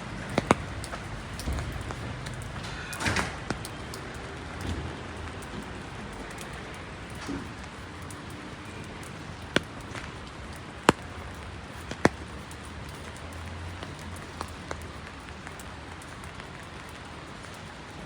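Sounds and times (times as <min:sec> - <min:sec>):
raindrops tapping: 0:00.0 - 0:18.0.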